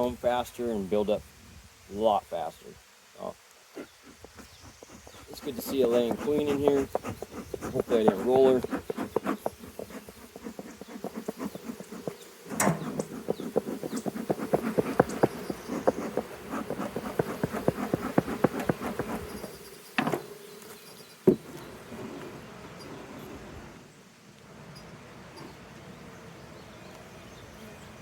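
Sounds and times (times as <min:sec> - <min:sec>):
bees buzzing: 0:03.8 - 0:23.7.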